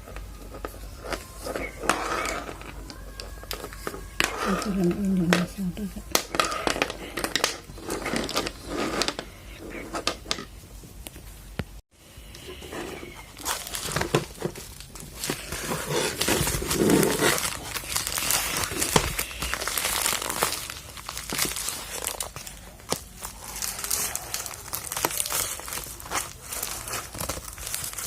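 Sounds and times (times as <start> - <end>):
packaging crinkling and tearing: 13.2 - 28.0.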